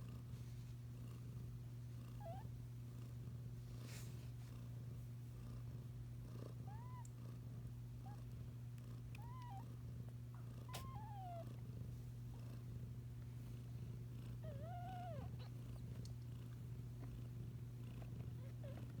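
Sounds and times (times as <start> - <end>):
kittens mewing: 10.7 - 11.4.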